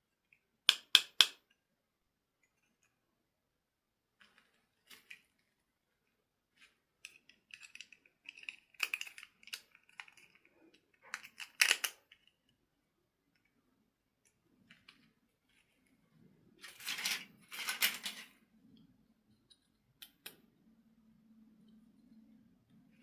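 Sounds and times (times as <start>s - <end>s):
plastic objects clicking and rustling: 4.2s - 5.5s, 6.6s - 12.5s, 16.6s - 18.4s.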